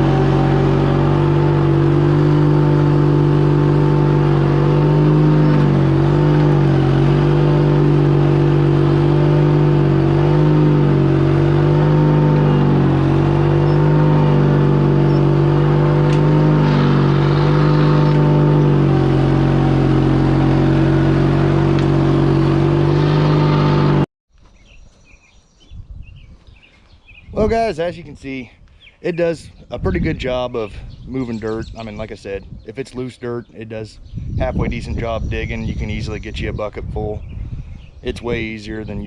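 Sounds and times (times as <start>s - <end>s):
drive belt squalling: 0.0s - 24.0s
skid steer engine running: 0.0s - 24.1s.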